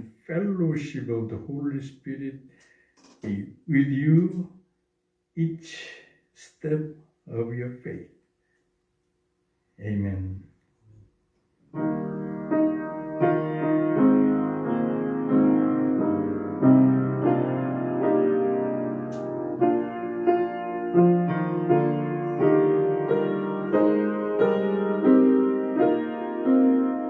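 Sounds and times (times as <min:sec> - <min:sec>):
piano playing slow chords: 0:11.7 - 0:27.0.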